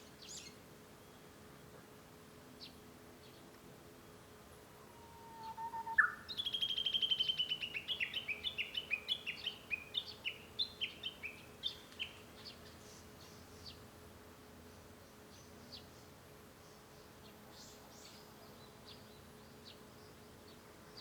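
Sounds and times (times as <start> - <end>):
bird singing whistled notes: 5.0 - 12.5.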